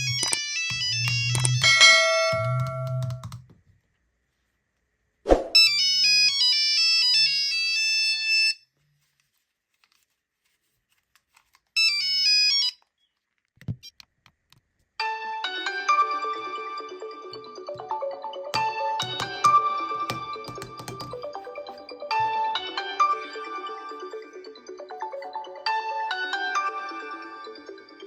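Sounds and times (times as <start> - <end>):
mobile phone ringtone melodies: 0.0 - 3.3, 15.0 - 28.0.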